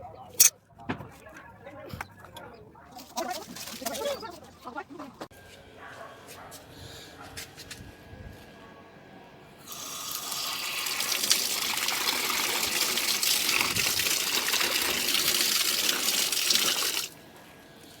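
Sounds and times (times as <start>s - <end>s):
water gushing from a pipe: 9.7s - 17.2s.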